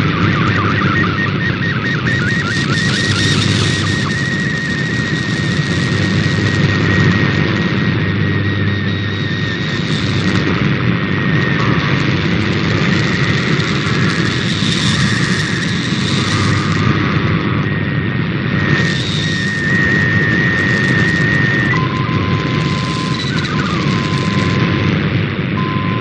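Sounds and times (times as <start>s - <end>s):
digital data signal: 0.0s - 25.0s, 25.6s - 26.0s
radio static: 0.0s - 26.0s.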